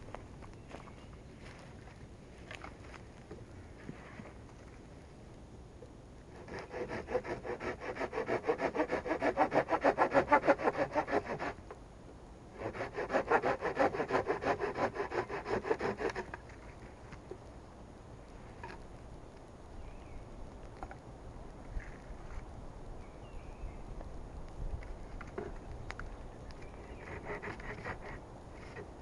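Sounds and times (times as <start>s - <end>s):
hand saw cutting wood: 6.4s - 11.6s, 12.6s - 16.4s, 26.9s - 28.9s.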